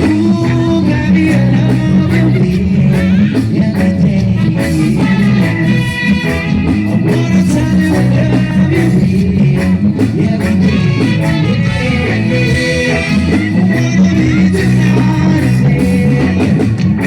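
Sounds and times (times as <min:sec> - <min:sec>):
bass: 0:00.0 - 0:17.0
drums: 0:00.0 - 0:17.0
electric guitar: 0:00.0 - 0:17.0
person singing: 0:00.0 - 0:17.0.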